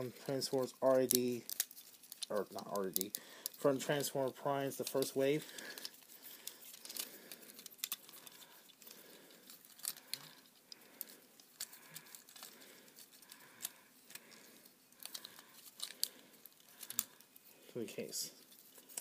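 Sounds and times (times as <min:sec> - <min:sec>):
plastic toy clicks and rattles: 0:15.0 - 0:17.1.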